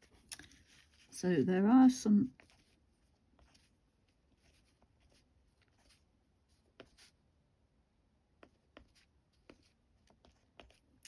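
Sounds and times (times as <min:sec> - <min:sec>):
crayon scratching on paper: 0:02.3 - 0:07.1.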